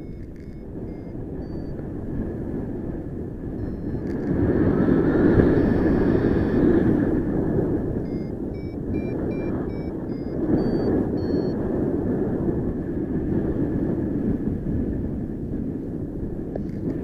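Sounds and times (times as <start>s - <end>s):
short electronic beeps: 0.0s - 1.8s, 3.6s - 4.3s, 5.4s - 6.6s, 8.0s - 11.6s
wind buffeting microphone: 0.0s - 17.0s.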